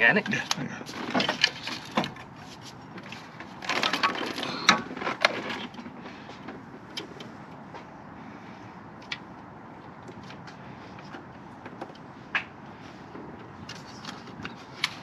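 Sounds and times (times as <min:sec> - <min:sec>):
heavy metal parts clunking: 0:00.2 - 0:07.7.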